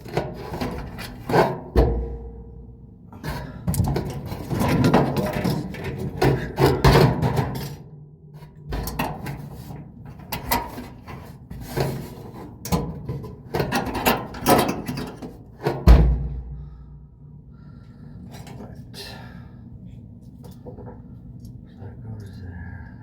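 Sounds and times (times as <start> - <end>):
parts and tools clattering: 0.0 - 2.2, 3.2 - 15.9
heavy thump: 15.9 - 16.8.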